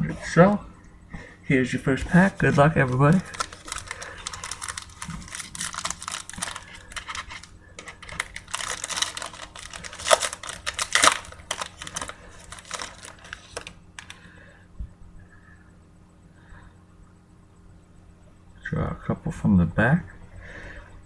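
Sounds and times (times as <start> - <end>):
card pack wrapper crinkling: 2.1 - 14.2.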